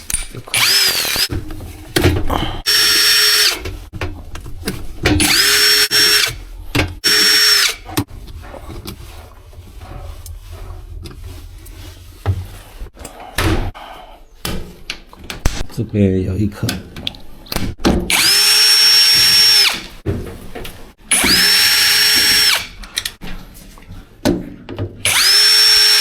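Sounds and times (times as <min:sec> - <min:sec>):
cordless drill whining: 0:00.4 - 0:01.3, 0:02.6 - 0:03.6, 0:05.2 - 0:06.4, 0:07.0 - 0:07.8, 0:18.1 - 0:19.9, 0:21.1 - 0:22.8, 0:25.0 - 0:26.0.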